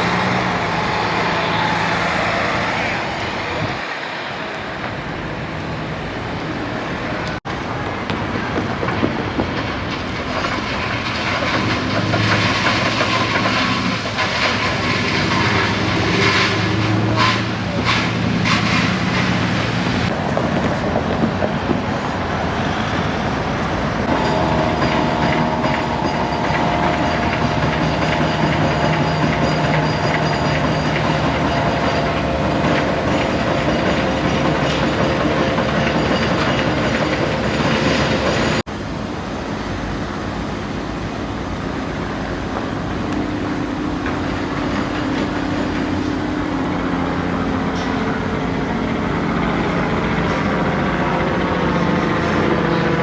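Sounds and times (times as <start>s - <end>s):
traction motor whine: 0.0s - 38.7s
wheel and rail noise: 0.0s - 53.0s.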